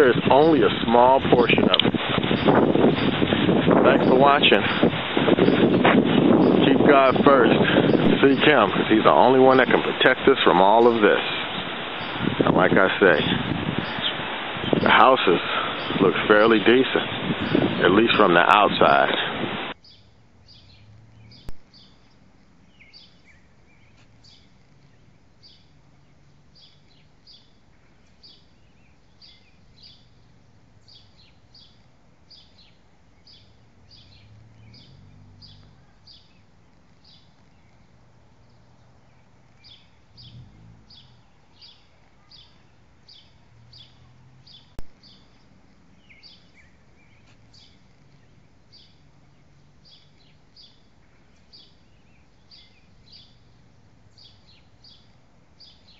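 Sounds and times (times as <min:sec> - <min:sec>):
bird chirping: 0:00.0 - 0:55.9
faint low rumble: 0:18.8 - 0:55.8.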